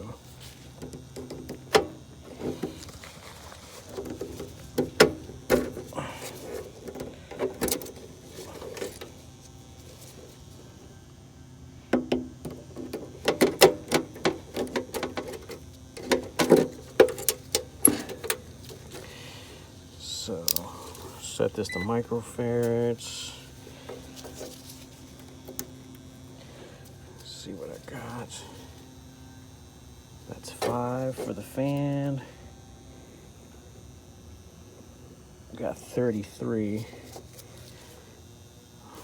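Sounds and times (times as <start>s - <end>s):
clicks taps and rattles of hand work: 11.9s - 19.1s.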